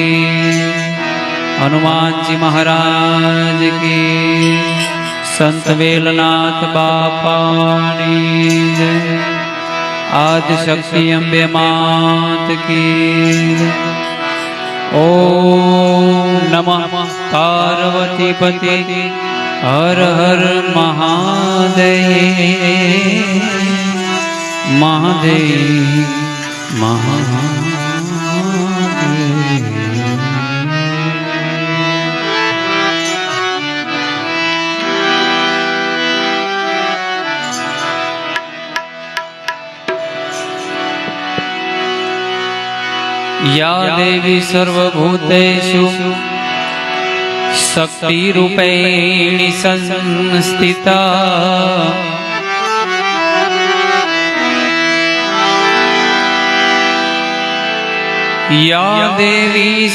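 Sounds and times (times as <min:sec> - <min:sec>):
harmonium melody: 0:00.0 - 0:59.9
sharp percussive taps: 0:37.4 - 0:41.8.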